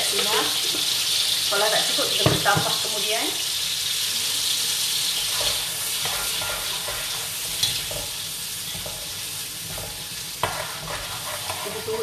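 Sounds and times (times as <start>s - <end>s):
paste sizzling in oil: 0.0s - 12.0s
spoon scraping pan: 5.1s - 12.0s.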